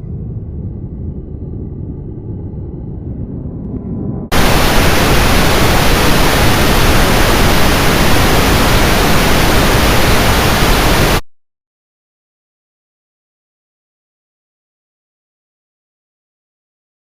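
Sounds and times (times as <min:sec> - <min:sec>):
low rumble: 0:00.0 - 0:11.2
loud static hiss: 0:04.3 - 0:11.2.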